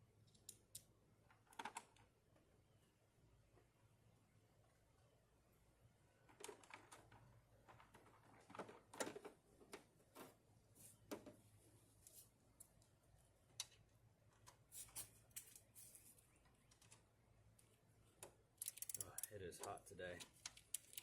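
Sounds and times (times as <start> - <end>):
hand tools clicking and tapping: 18.6 - 21.0.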